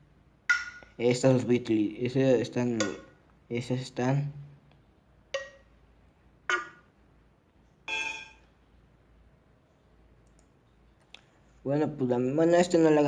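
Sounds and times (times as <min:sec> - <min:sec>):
electronic pitched tone: 0:07.9 - 0:08.4
ringing electronic hit: 0:07.9 - 0:08.4.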